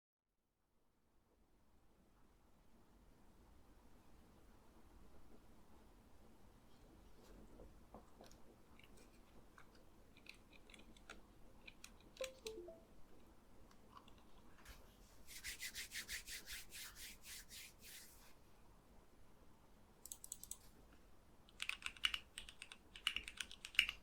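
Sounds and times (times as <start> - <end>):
scratchy rubbing strokes: 15.2 - 18.3.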